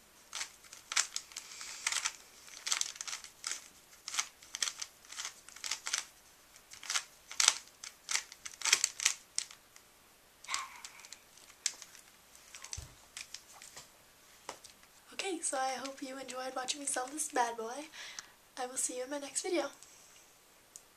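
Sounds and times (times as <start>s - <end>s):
puzzle cube clicking: 0.3s - 9.6s.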